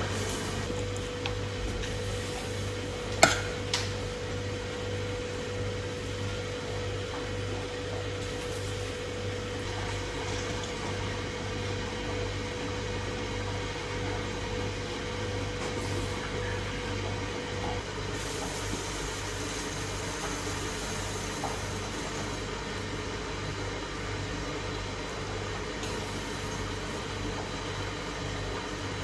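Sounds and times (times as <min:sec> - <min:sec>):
steady low hum: 0:00.0 - 0:18.4.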